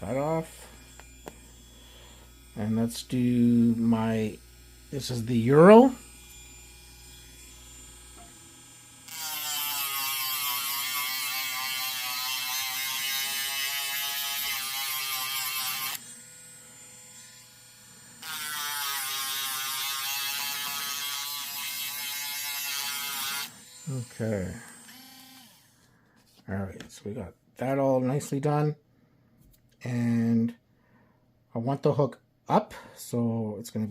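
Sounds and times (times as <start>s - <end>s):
handheld electric tool buzzing: 0.0s - 25.9s.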